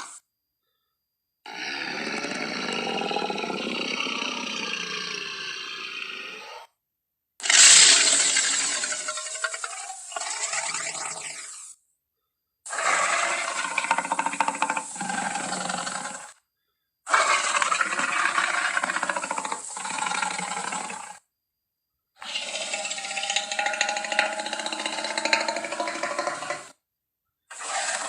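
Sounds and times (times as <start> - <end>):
dinosaur roars and growls: 1.5 - 6.7, 12.7 - 16.4, 17.1 - 21.2, 22.2 - 26.8, 27.5 - 28.0.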